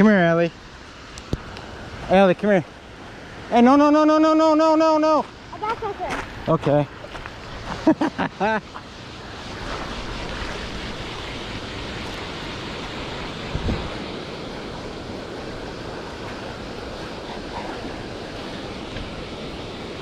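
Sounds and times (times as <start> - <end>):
steady rushing noise: 0.0 - 20.0.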